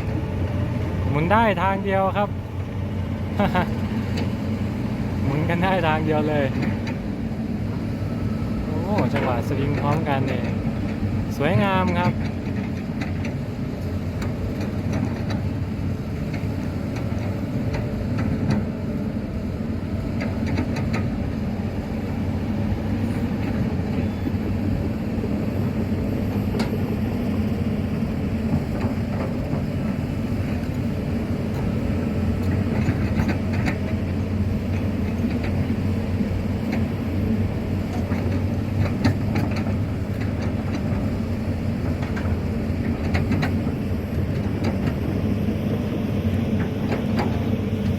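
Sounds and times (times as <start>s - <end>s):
excavator diesel engine running: 0.0s - 47.9s
clatter: 9.0s - 15.5s, 32.4s - 35.7s, 37.9s - 41.2s, 41.8s - 45.2s.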